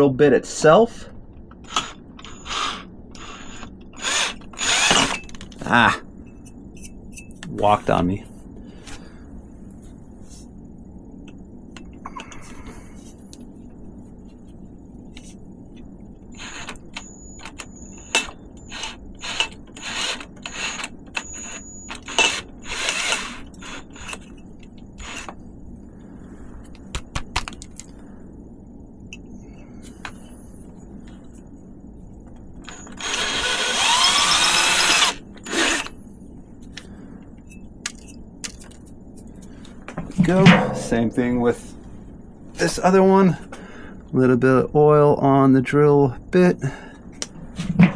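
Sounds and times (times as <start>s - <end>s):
electric drill boring metal: 1.6s - 5.2s, 16.4s - 16.8s, 18.7s - 24.2s, 25.0s - 25.3s, 32.7s - 35.9s.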